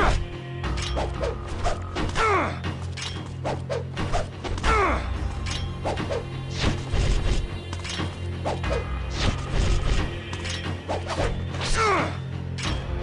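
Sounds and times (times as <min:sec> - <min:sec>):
metallic sword strikes and swishes: 0:05.4 - 0:12.9.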